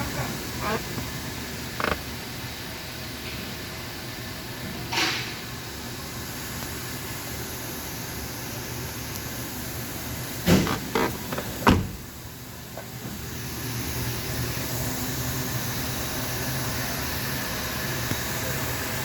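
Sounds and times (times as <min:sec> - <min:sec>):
truck engine humming: 0:00.0 - 0:02.7.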